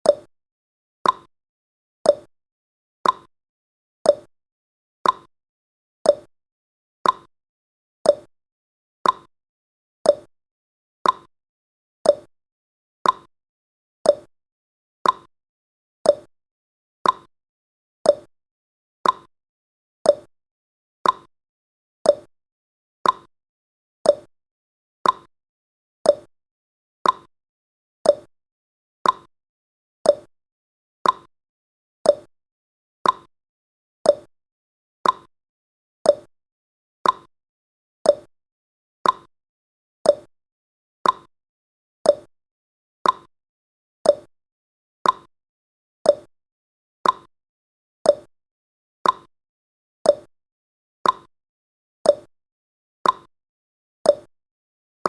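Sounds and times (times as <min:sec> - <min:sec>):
clock-like ticks: 0:00.0 - 0:00.3, 0:01.0 - 0:01.3, 0:02.1 - 0:02.3, 0:03.0 - 0:03.3, 0:04.1 - 0:04.3, 0:05.0 - 0:05.3, 0:06.1 - 0:06.3, 0:07.0 - 0:07.3, 0:08.1 - 0:08.3, 0:09.0 - 0:09.3, 0:10.1 - 0:10.3, 0:11.0 - 0:11.3, 0:12.1 - 0:12.3, 0:13.0 - 0:13.3, 0:14.1 - 0:14.3, 0:15.0 - 0:15.3, 0:16.1 - 0:16.3, 0:17.0 - 0:17.3, 0:18.1 - 0:18.3, 0:19.0 - 0:19.3, 0:20.1 - 0:20.3, 0:21.0 - 0:21.3, 0:22.1 - 0:22.3, 0:23.0 - 0:23.3, 0:24.1 - 0:24.3, 0:25.0 - 0:25.3, 0:26.0 - 0:26.3, 0:27.0 - 0:27.3, 0:28.0 - 0:28.3, 0:29.0 - 0:29.3, 0:30.0 - 0:30.3, 0:31.0 - 0:31.3, 0:32.1 - 0:32.3, 0:33.0 - 0:33.3, 0:34.0 - 0:34.3, 0:35.0 - 0:35.3, 0:36.0 - 0:36.3, 0:37.0 - 0:37.3, 0:38.1 - 0:38.3, 0:39.0 - 0:39.3, 0:40.1 - 0:40.3, 0:41.0 - 0:41.3, 0:42.0 - 0:42.3, 0:43.0 - 0:43.3, 0:44.0 - 0:44.3, 0:45.0 - 0:45.3, 0:46.1 - 0:46.3, 0:47.0 - 0:47.3, 0:48.1 - 0:48.3, 0:49.0 - 0:49.3, 0:50.1 - 0:50.3, 0:51.0 - 0:51.3, 0:52.1 - 0:52.3, 0:53.0 - 0:53.3, 0:54.1 - 0:54.3.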